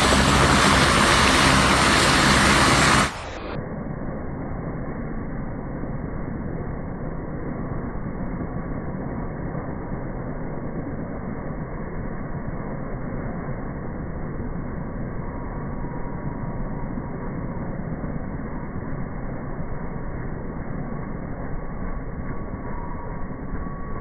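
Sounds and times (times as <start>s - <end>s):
helicopter rumbling: 0.0s - 3.6s.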